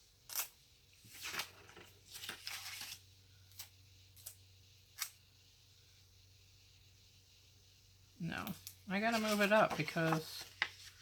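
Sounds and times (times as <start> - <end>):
paper rustling: 1.0 - 3.0, 9.0 - 11.0.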